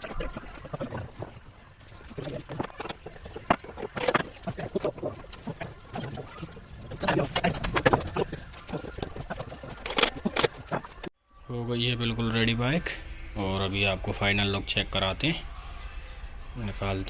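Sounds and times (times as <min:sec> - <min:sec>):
hand tools clicking and knocking: 0:02.2 - 0:05.7.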